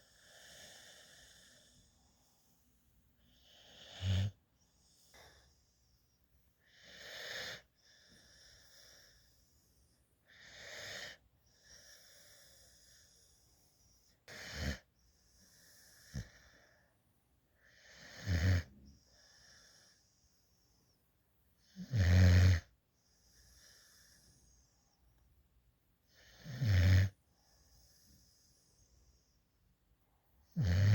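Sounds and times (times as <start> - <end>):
puppy snoring: 0.0 - 2.5, 3.2 - 5.6, 6.6 - 9.4, 10.3 - 13.3, 14.2 - 16.7, 17.7 - 20.0, 21.6 - 22.8, 26.1 - 28.5, 30.5 - 30.9.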